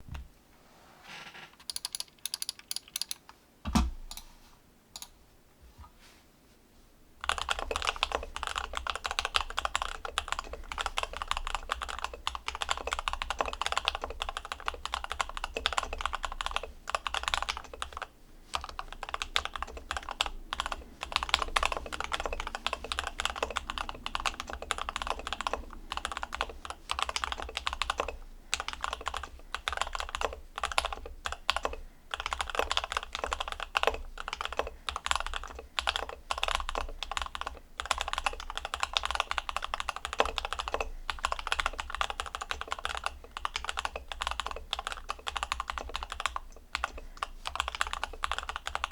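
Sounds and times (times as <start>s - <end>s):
deep keyboard thump: 0.0s - 0.3s, 3.6s - 4.1s
mechanical keyboard typing: 1.6s - 3.3s, 7.2s - 48.9s.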